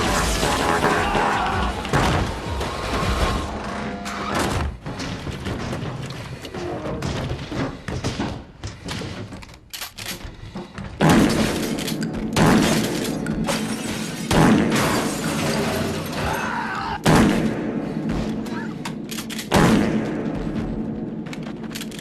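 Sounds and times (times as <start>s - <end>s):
knocks and crashes: 0.0s - 16.1s.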